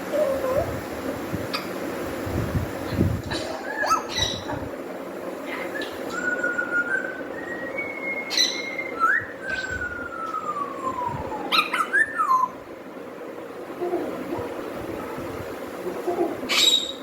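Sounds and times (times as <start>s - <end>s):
parrot whistling: 5.8s - 12.6s.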